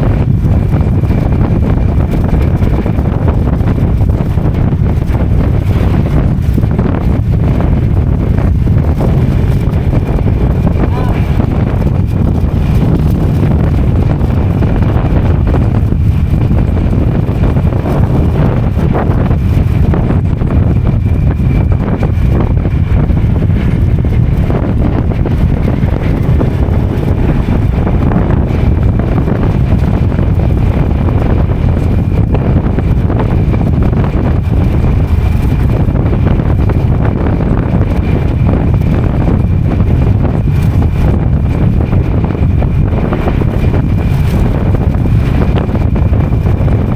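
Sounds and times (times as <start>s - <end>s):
motorcycle engine running: 0.0s - 46.9s
wind buffeting microphone: 0.0s - 46.9s.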